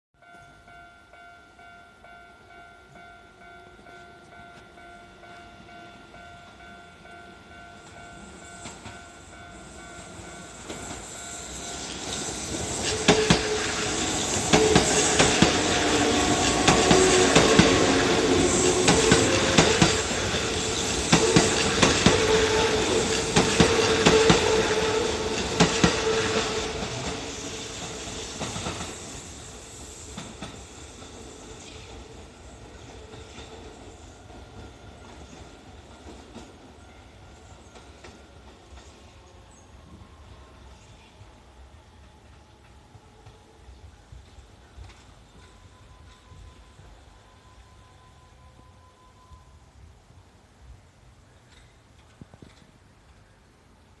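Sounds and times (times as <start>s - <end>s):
train hum: 0.2s - 54.0s.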